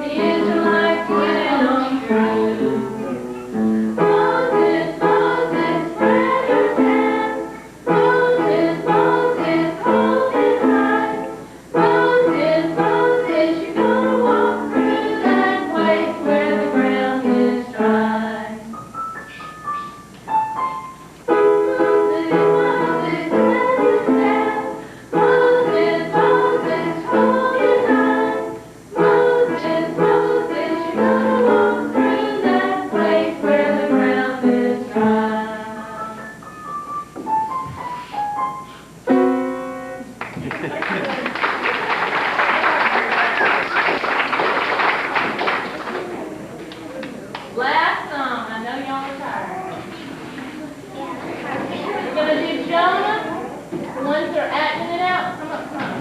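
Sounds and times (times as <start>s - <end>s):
group singing: 0.0s - 3.1s, 3.9s - 18.8s, 21.4s - 36.3s
keyboard accompaniment: 0.0s - 40.2s.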